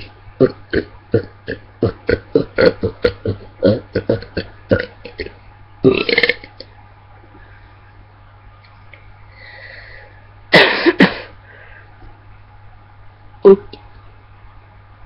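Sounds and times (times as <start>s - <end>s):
man burping: 0.4s - 6.7s.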